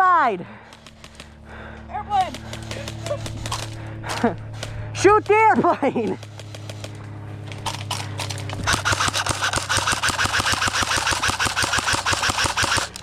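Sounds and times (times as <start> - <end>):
low hum: 0.4 - 13.0
airsoft gun rapid fire: 2.2 - 4.7, 7.6 - 13.0.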